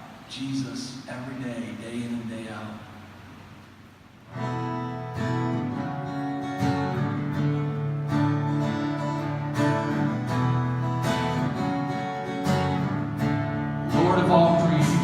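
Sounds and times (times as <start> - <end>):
acoustic guitar strumming chords: 4.3 - 15.0.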